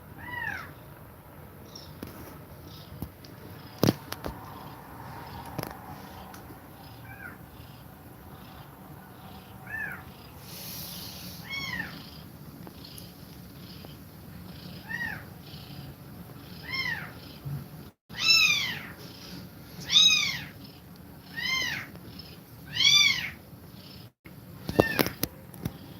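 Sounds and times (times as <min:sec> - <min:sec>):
kittens mewing: 0:00.1 - 0:00.9, 0:03.6 - 0:17.4, 0:18.1 - 0:19.0, 0:19.8 - 0:22.0, 0:22.7 - 0:23.4.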